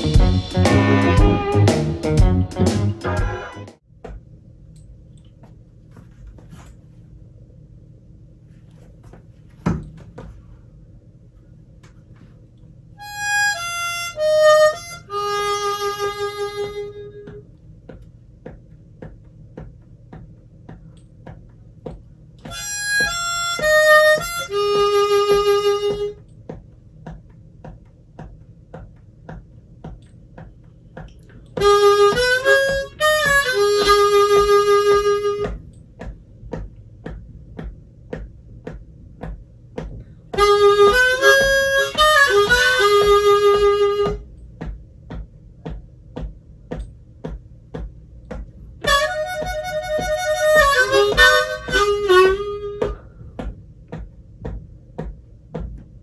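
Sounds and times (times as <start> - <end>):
harmonica playing blues phrases: 0.0 - 3.8, 13.0 - 17.4, 22.5 - 26.2, 31.6 - 35.6, 40.4 - 44.2, 48.8 - 53.1
ticking beat: 0.0 - 3.8, 13.0 - 56.0.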